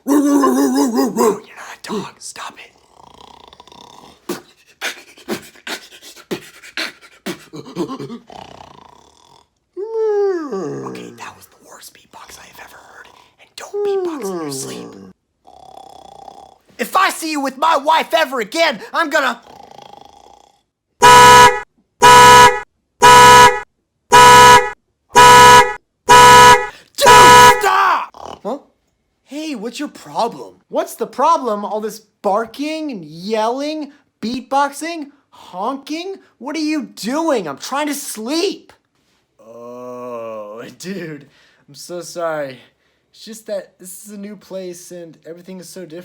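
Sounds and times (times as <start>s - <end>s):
man beatboxing: 4.3s - 8.2s
loud horn blasts: 21.0s - 27.6s.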